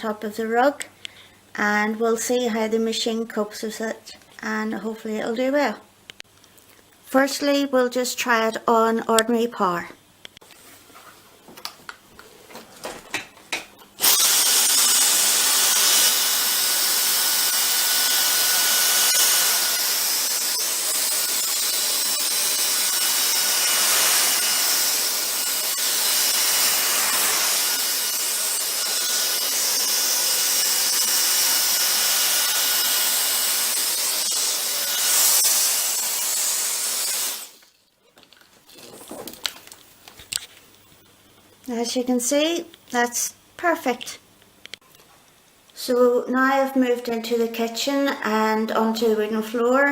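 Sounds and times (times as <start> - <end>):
vacuum cleaner running: 14.0 - 37.6.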